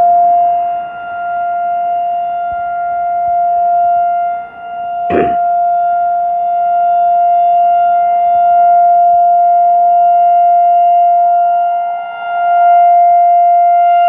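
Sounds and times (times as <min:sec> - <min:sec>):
tornado siren steady tone: 0:00.0 - 0:05.0.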